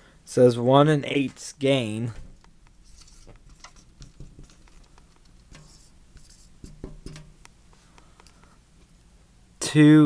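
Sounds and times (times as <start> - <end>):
light scratching rustles: 2.3 - 7.9.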